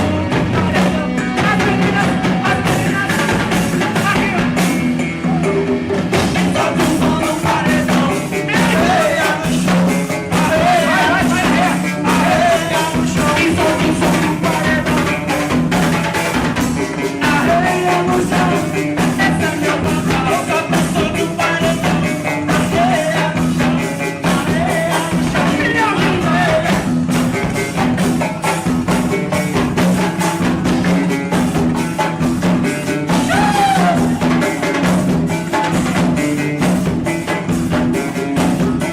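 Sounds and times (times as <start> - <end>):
person singing: 0.0 - 27.4, 32.7 - 36.4
driving drum beat: 0.0 - 38.9.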